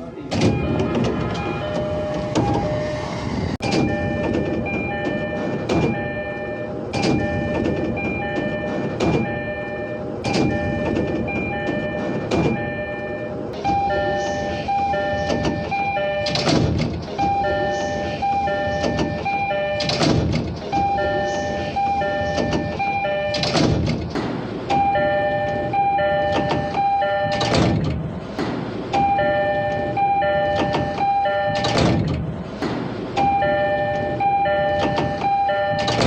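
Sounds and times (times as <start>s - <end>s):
station noise: 0.0s - 36.0s
train door two-note chime: 33.2s - 36.0s.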